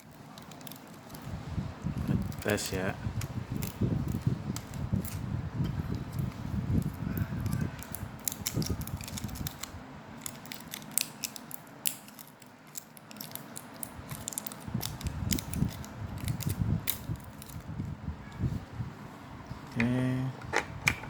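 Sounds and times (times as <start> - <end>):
plastic clicks and rattles: 6.8 - 17.7.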